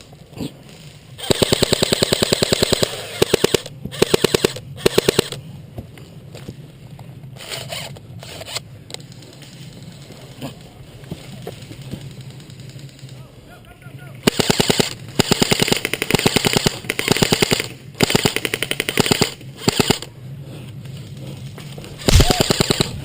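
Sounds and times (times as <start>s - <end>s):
airsoft rifle full-auto bursts: 1.2s - 5.4s, 14.2s - 20.1s, 22.1s - 23.0s.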